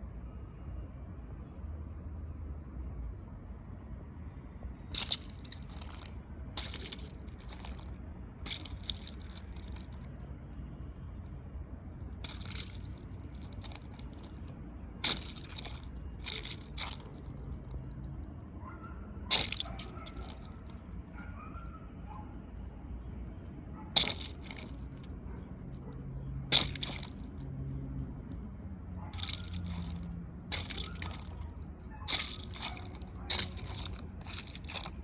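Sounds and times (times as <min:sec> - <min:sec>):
squishy toy crunching: 0:04.9 - 0:10.2, 0:12.0 - 0:17.9, 0:19.3 - 0:21.1, 0:23.9 - 0:25.8, 0:26.5 - 0:27.4, 0:29.1 - 0:35.0.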